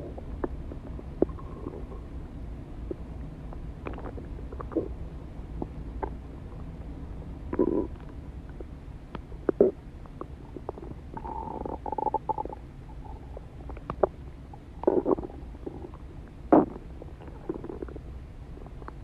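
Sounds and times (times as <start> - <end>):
stomach growling and gurgling: 0.0 - 2.2, 2.8 - 5.0, 7.5 - 8.7, 9.4 - 19.0.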